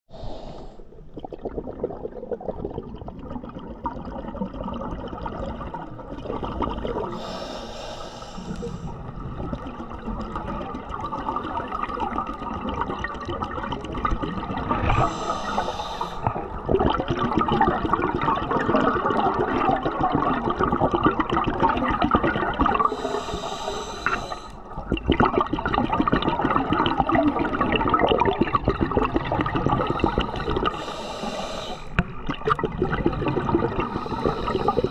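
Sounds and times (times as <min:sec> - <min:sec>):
gurgling exhaled bubbles: 0:00.3 - 0:07.8, 0:08.4 - 0:34.9
regulator hiss: 0:15.0 - 0:16.3.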